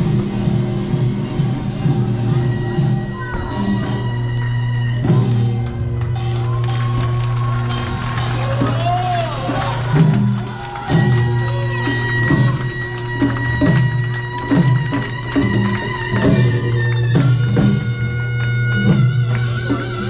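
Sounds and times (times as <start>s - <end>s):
music with drums bass and guitar: 12.2s - 20.0s.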